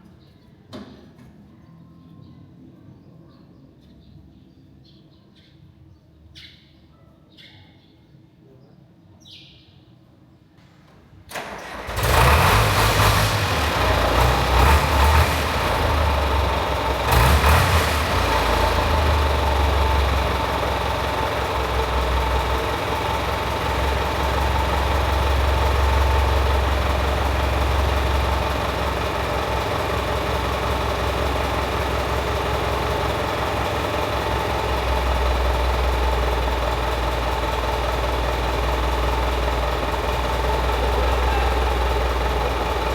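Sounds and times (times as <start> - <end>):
bulldozer diesel engine idling: 11.3 - 42.9.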